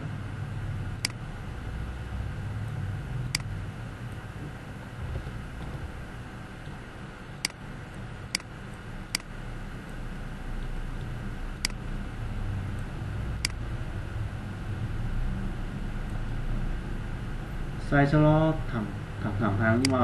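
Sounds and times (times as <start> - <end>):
low background rumble: 0.0 - 20.0
computer mouse clicks: 1.0 - 1.2, 3.3 - 3.5, 9.1 - 10.0, 10.6 - 11.8.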